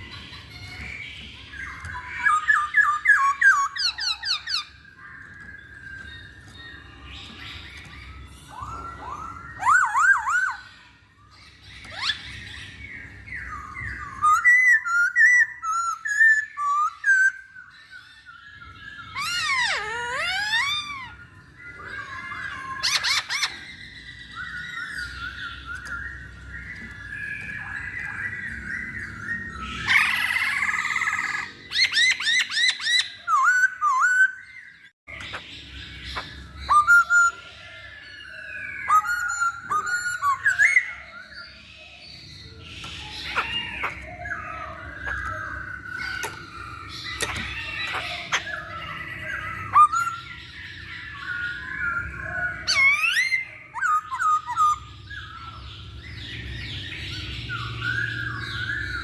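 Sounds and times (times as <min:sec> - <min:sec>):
bird singing whistled phrases: 0:00.6 - 0:35.4, 0:36.2 - 0:41.6.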